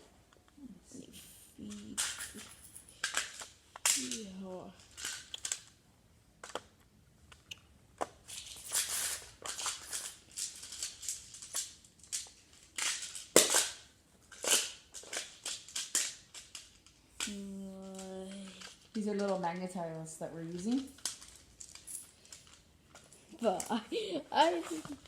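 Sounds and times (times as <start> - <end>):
plastic tiles clicking and clattering: 1.6 - 5.7, 7.4 - 19.4.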